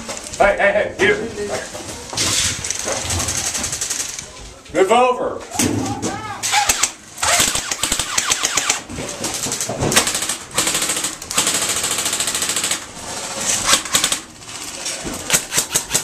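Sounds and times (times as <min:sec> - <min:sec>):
airsoft guns firing bursts: 0:06.5 - 0:08.9, 0:09.9 - 0:12.9, 0:13.6 - 0:14.3, 0:15.2 - 0:16.0.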